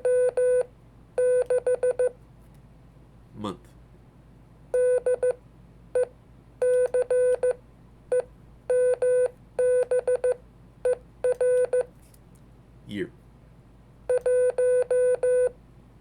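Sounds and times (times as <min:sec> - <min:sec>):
morse code beeps: 0:00.0 - 0:02.1, 0:04.8 - 0:05.4, 0:06.0 - 0:11.9, 0:14.1 - 0:15.5.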